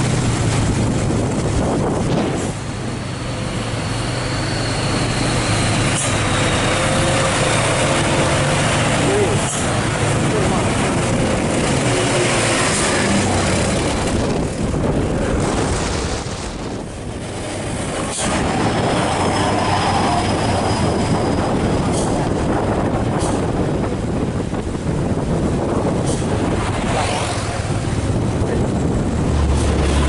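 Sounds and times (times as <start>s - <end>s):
heavy truck running: 0.0s - 30.0s
faint high squeal: 2.9s - 7.3s.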